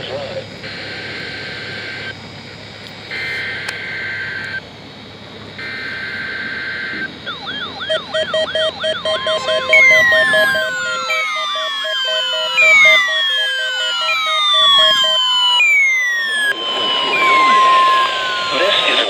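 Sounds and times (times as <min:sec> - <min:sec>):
shrill warbling data tones: 0:00.0 - 0:04.7, 0:05.6 - 0:19.0
steady alarm tone: 0:00.0 - 0:19.0
pulsing beep: 0:03.1 - 0:04.6, 0:05.6 - 0:19.0
fast repeating chirps: 0:07.3 - 0:16.2.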